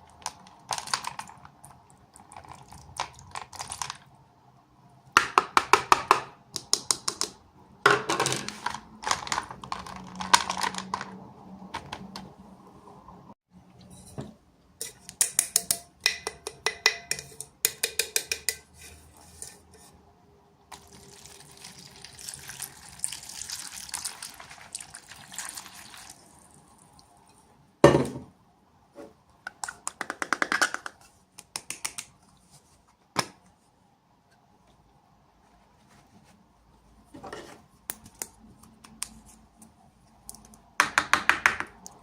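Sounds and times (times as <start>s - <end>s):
plastic toy pieces clicking and rattling: 0.1s - 1.6s, 8.5s - 11.2s.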